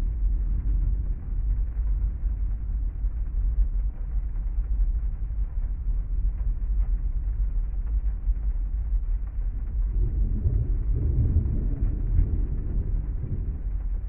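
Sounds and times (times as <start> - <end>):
deep rumble: 0.0 - 14.0
raindrop ticks: 0.0 - 14.0
rain hiss: 4.5 - 14.0.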